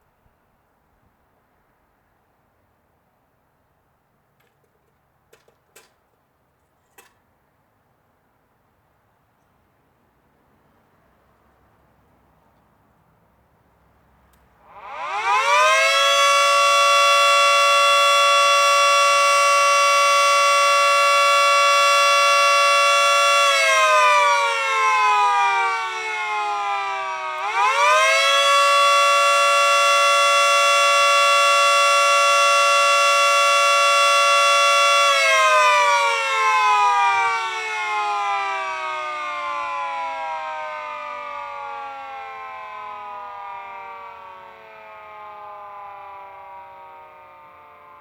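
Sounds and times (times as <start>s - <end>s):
two-tone siren winding: 26.4s - 36.1s.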